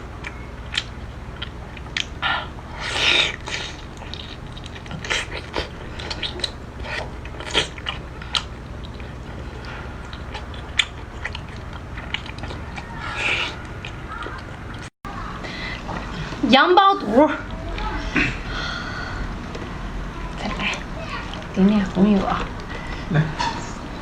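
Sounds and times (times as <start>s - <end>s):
person chewing crunchy food: 0.2s - 14.9s.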